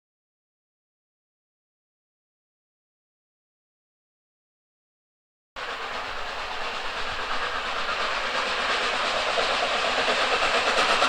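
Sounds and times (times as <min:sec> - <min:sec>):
rhythmic locomotive beat: 0:05.6 - 0:11.0
steam locomotive exhaust hissing: 0:05.6 - 0:11.0.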